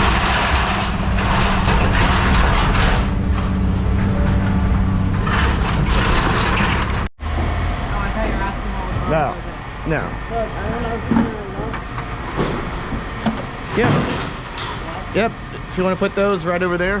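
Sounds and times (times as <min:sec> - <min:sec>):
scrap metal crunching and clattering: 0:00.0 - 0:07.1, 0:09.9 - 0:16.3
diesel engine and hydraulics running: 0:00.0 - 0:17.0.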